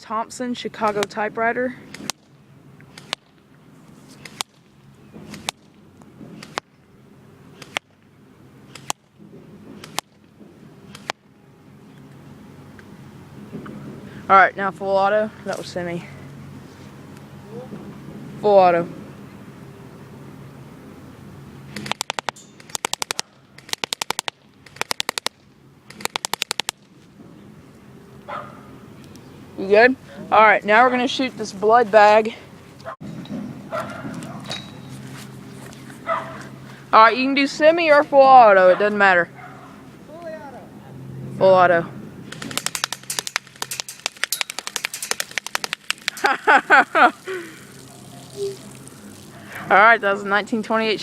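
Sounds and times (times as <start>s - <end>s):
airsoft gun firing sharp snaps: 1.9s - 3.3s, 4.2s - 4.7s, 5.3s - 5.8s, 6.4s - 6.7s, 7.6s - 8.0s, 8.7s - 9.1s, 9.8s - 10.2s, 10.9s - 11.2s, 21.7s - 26.9s, 42.3s - 46.2s.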